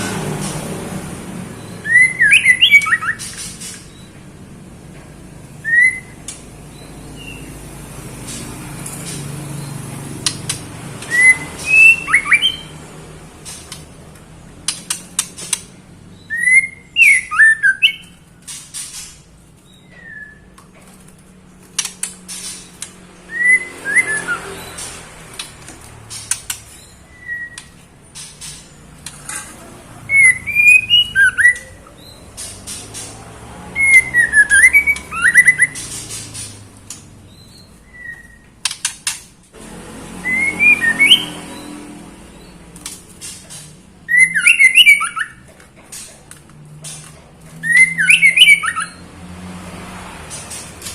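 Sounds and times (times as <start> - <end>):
bird whistled calls: 1.6 - 3.8, 5.6 - 6.2, 11.1 - 12.7, 16.2 - 18.2, 19.8 - 20.5, 23.3 - 24.7, 26.9 - 27.8, 30.1 - 32.2, 33.8 - 36.1, 37.5 - 38.4, 40.2 - 41.7, 44.0 - 45.5, 47.6 - 49.0.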